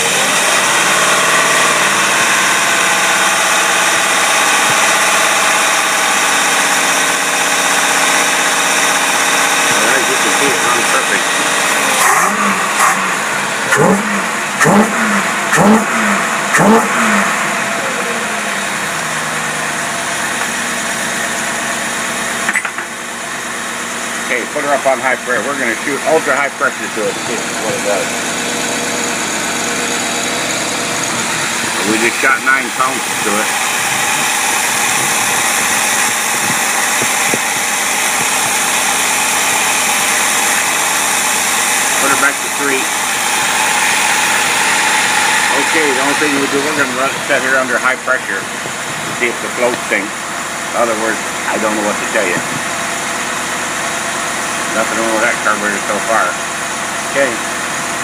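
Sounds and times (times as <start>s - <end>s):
engine revving and idling: 0.0s - 58.0s.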